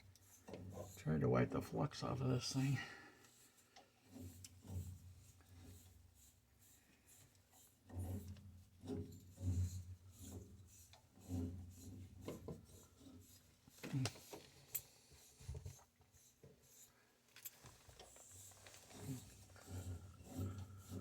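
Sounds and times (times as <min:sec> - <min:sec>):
cloth rubbing on copper pipe: 0:03.3 - 0:14.4, 0:18.1 - 0:21.0.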